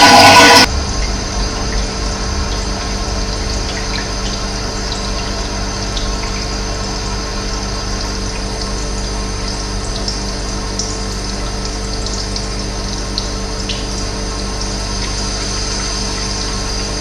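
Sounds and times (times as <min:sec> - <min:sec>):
loud rushing sound: 0:00.0 - 0:03.4
low rumble: 0:00.0 - 0:06.1.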